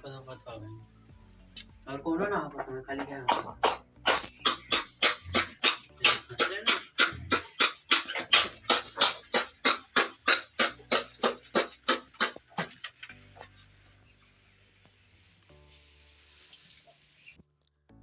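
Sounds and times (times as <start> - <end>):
piglet rapid laboured breathing: 3.3 - 12.9.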